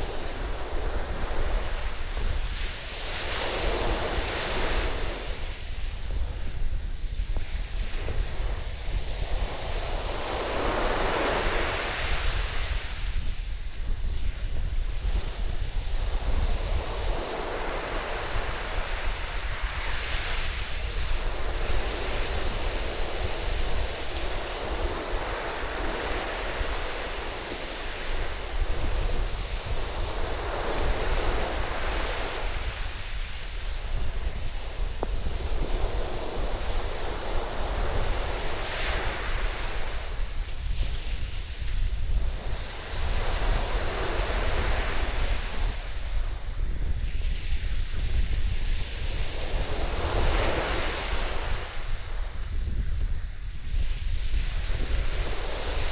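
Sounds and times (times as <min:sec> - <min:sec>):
wind buffeting microphone: 0:00.0 - 0:55.9.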